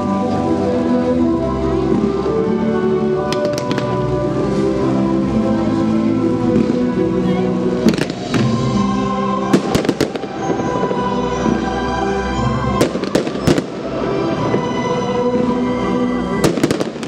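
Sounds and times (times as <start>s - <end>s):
music playing: 0.0s - 17.0s
fireworks bangs: 3.3s - 4.3s, 7.8s - 11.1s, 12.7s - 14.7s, 16.4s - 17.0s.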